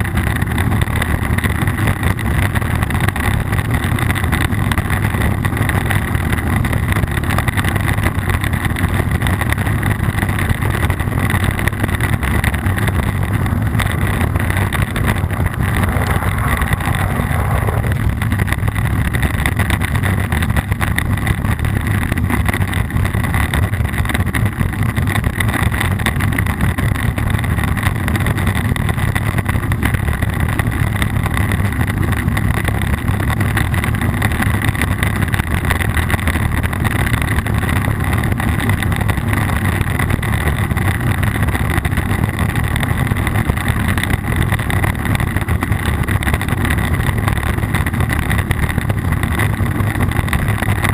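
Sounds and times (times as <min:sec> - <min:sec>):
wind buffeting microphone: 0:11.2 - 0:19.4
tyres running over wet trail: 0:13.2 - 0:18.4.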